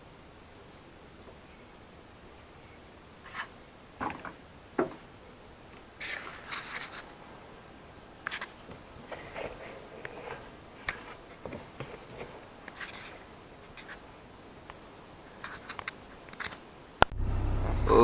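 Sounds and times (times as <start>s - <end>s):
hands handling wiring: 8.2s - 16.7s.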